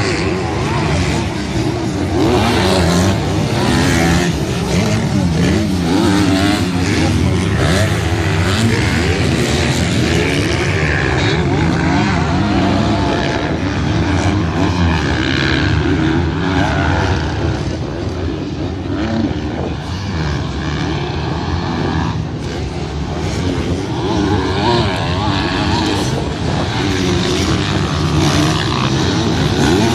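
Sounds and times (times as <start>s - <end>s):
motocross bikes revving: 0.0s - 29.9s.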